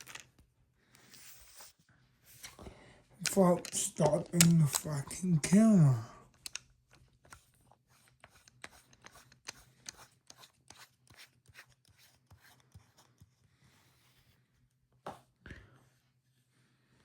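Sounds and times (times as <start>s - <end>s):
handling clicks and rubbing: 3.2s - 10.9s.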